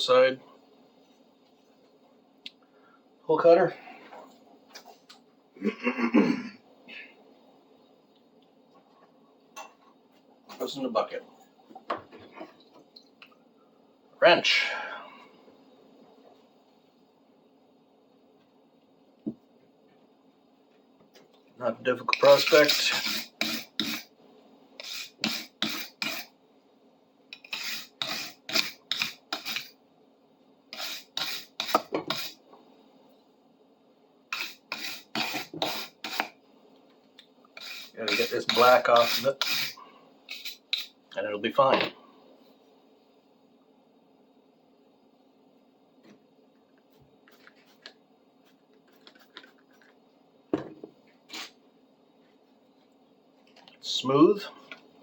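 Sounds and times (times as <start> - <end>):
scrubbing a metal wrench: 22.2 - 24.0, 30.7 - 32.4, 37.6 - 40.9.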